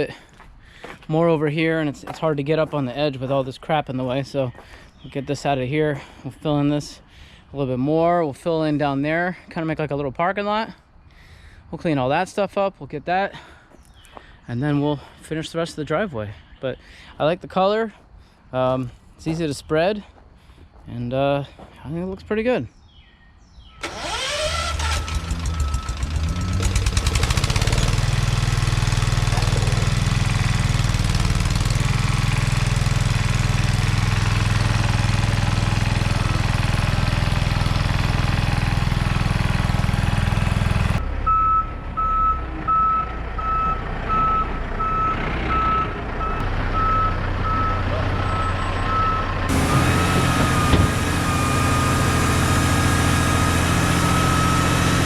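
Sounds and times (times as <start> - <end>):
skid steer engine running: 23.8 - 55.0
backup alarm beeping: 25.0 - 26.6, 41.3 - 51.8.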